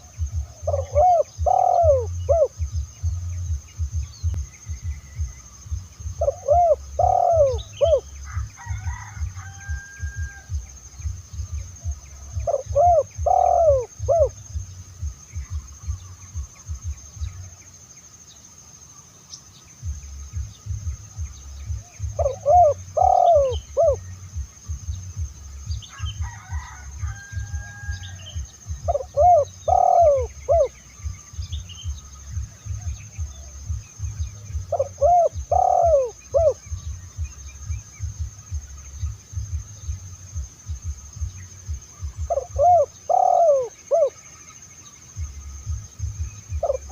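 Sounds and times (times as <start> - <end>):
dove cooing: 0.0 - 5.4, 6.0 - 10.8, 11.4 - 17.5, 20.4 - 25.3, 28.1 - 31.2, 31.8 - 38.7, 39.4 - 44.2, 46.0 - 46.9
low rumbling noise: 0.0 - 8.6, 19.8 - 26.2, 26.8 - 43.1.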